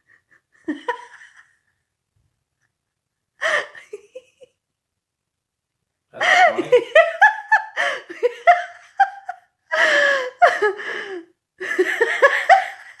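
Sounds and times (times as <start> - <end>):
person laughing: 6.2 - 10.9.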